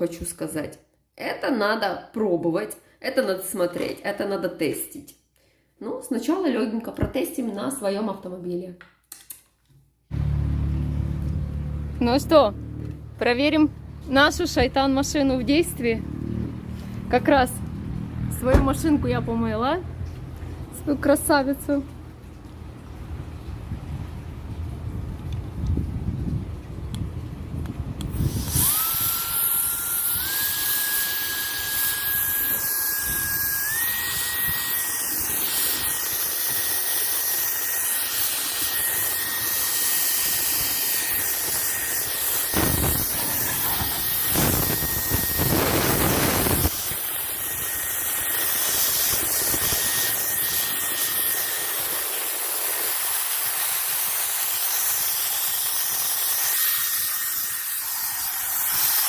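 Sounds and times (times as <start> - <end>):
high motor whine: 10.1 - 20.2, 28.0 - 59.0
blower fan air rush: 23.2 - 59.0.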